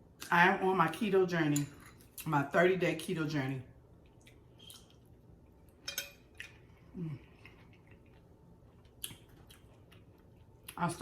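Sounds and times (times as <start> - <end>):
utensils clinking on a plate: 5.8 - 6.6.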